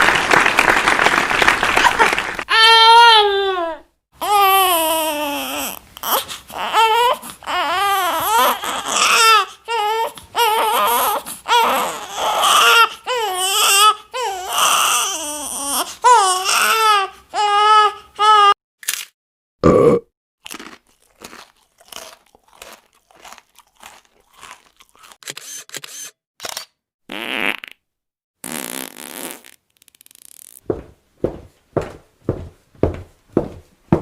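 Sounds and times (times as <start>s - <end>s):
baby crying: 2.5s - 18.6s.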